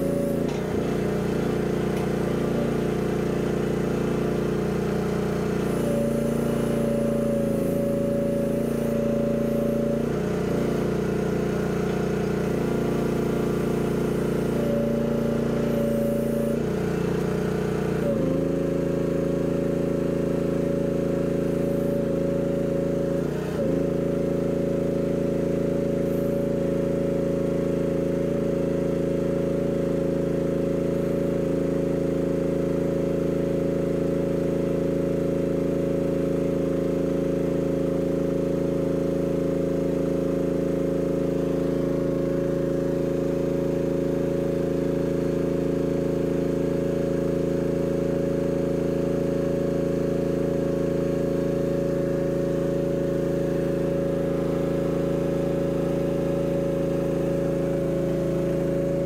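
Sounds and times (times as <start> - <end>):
excavator engine running: 0.0 - 19.9, 52.0 - 59.0.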